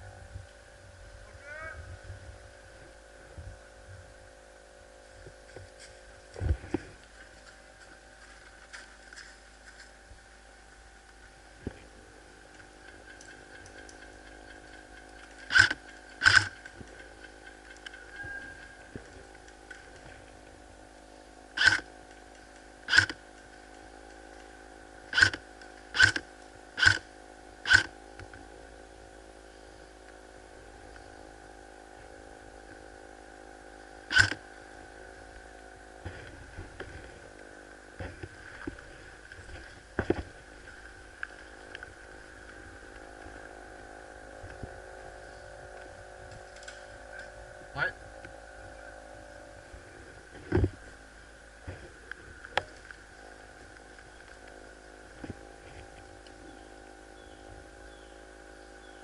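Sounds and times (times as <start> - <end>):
steady hum: 0.0 - 59.0
rustling and clicks: 5.2 - 10.1, 45.7 - 47.4.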